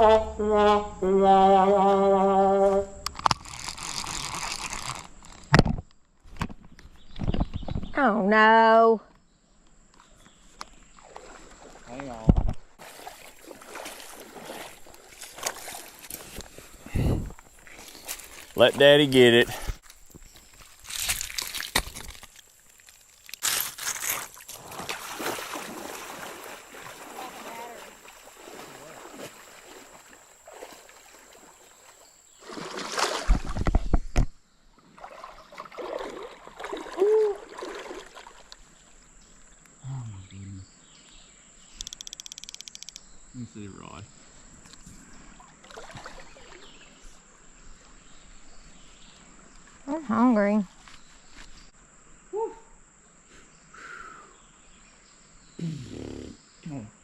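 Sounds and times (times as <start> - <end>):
creek water flowing: 10.4 - 33.6, 34.8 - 39.7, 44.5 - 48.0
water splashing: 10.8 - 16.9, 20.6 - 33.9, 34.8 - 39.0, 45.3 - 47.1
person groaning on a low note: 39.8 - 40.5, 55.6 - 56.9.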